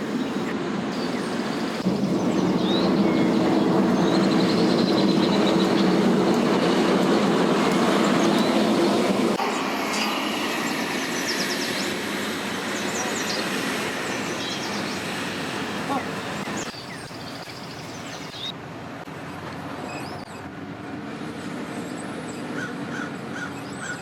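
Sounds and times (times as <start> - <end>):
vehicle engine humming: 0.0 - 18.1
heavy wind noise: 0.0 - 18.4.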